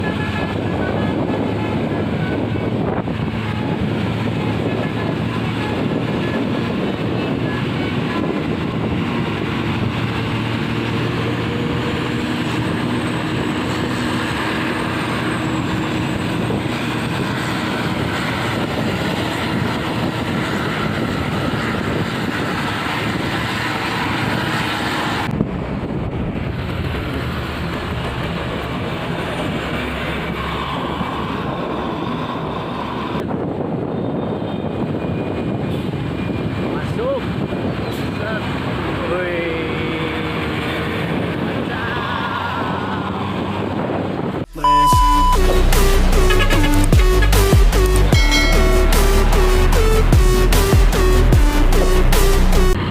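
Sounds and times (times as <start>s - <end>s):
bus engine running: 0.0s - 52.9s
tyre and road rush: 0.0s - 52.9s.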